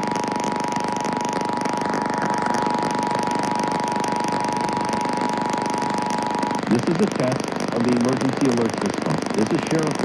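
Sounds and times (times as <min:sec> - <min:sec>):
radio static hiss: 0:00.0 - 0:10.0.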